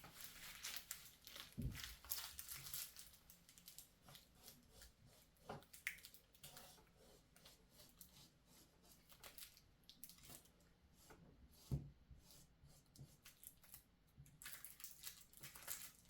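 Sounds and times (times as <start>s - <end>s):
cloth and paper rustling: 0.0s - 4.6s.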